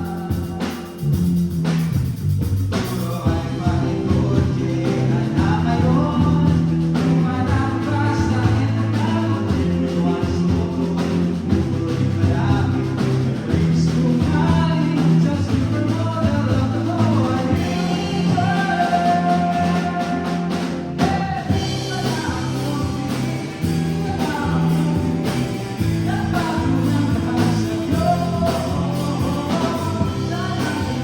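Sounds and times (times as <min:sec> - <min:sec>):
music with singing over speakers: 0:00.0 - 0:02.0, 0:02.7 - 0:31.0.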